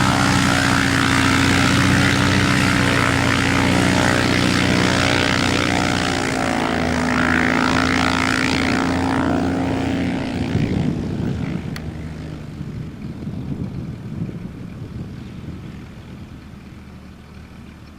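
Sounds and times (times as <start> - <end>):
plane engine and propeller: 0.0 - 17.9.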